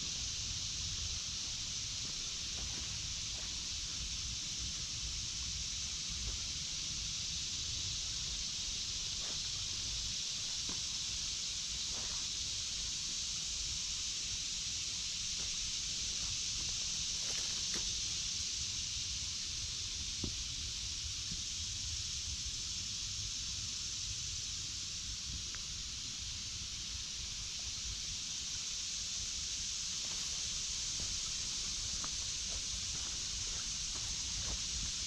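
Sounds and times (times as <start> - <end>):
cicada chorus drone: 0.0 - 35.0
footsteps rustling on trail: 1.3 - 3.7, 29.9 - 35.0.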